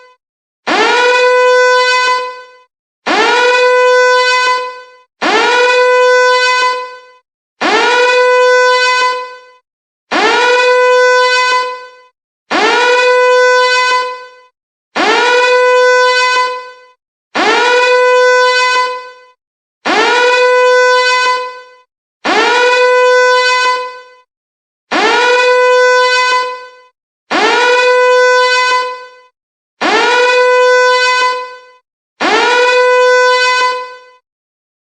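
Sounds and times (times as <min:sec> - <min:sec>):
siren blasts: 0:00.7 - 0:07.0, 0:07.6 - 0:09.4, 0:10.1 - 0:14.4, 0:15.0 - 0:16.7, 0:17.4 - 0:19.2, 0:19.8 - 0:21.6, 0:22.2 - 0:24.0, 0:24.9 - 0:26.7, 0:27.3 - 0:29.1, 0:29.8 - 0:31.6, 0:32.2 - 0:34.2.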